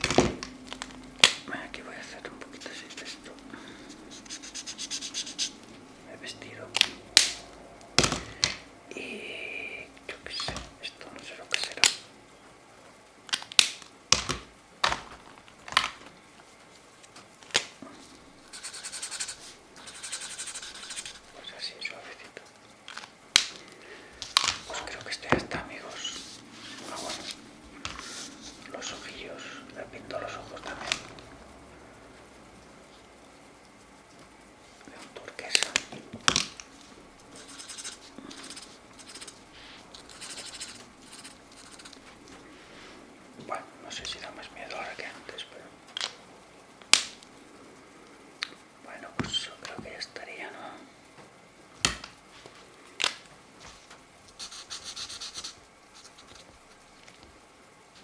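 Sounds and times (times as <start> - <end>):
markers scratching on paper: 1.9 - 7.4, 18.4 - 22.3, 24.4 - 31.2, 37.2 - 42.2, 54.3 - 57.0.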